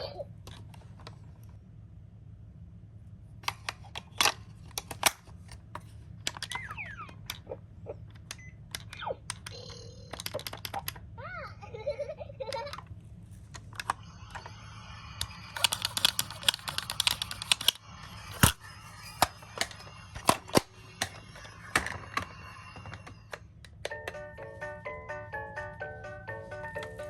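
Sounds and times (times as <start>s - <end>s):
toy cars clicking and rattling: 3.4s - 7.5s, 8.1s - 11.0s, 15.2s - 23.7s
music: 23.8s - 27.0s.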